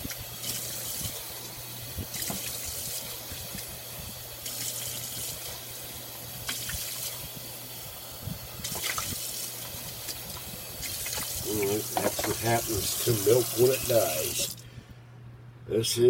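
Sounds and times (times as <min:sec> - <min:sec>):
tap running into a sink: 0:02.1 - 0:02.9, 0:08.6 - 0:14.6.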